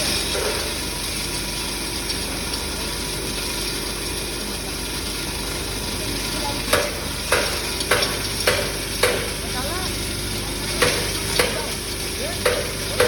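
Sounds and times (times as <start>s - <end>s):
grinding machine running: 0.0s - 13.0s
sharp knocks: 6.7s - 9.4s, 10.8s - 11.7s, 12.4s - 13.0s.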